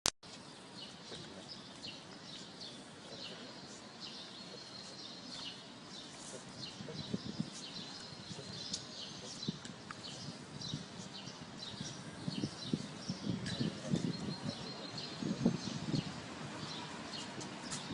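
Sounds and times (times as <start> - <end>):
small birds chirping: 0.3 - 17.9.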